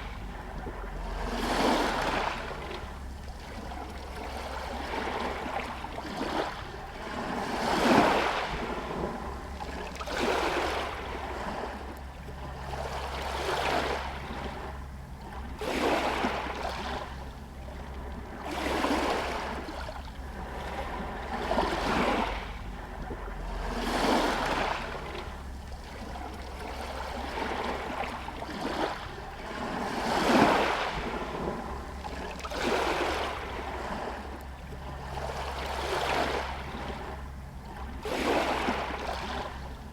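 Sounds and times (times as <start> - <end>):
small waves lapping on stones: 0.0 - 39.9
steady low rumble: 0.0 - 39.9.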